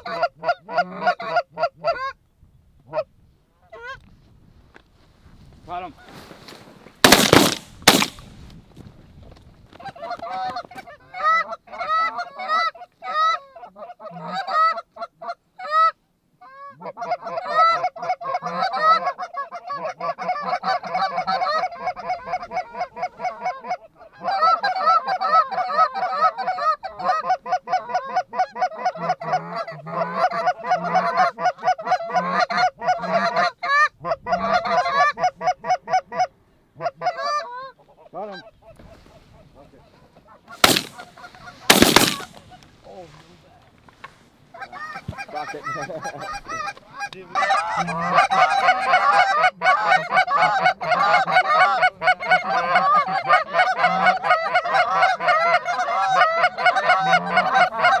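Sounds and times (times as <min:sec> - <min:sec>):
shotgun shots: 0:07.1 - 0:08.3, 0:40.6 - 0:42.5.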